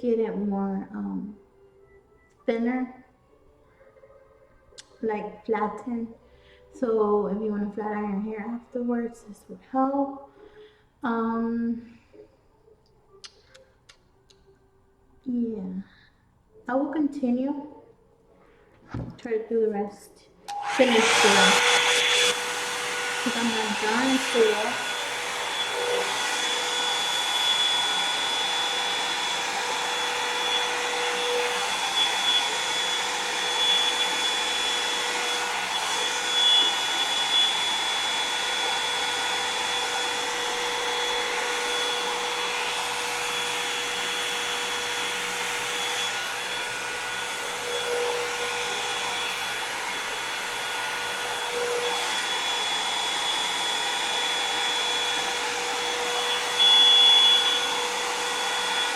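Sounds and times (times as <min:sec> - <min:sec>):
hair dryer blowing with whine: 0:20.5 - 0:58.9.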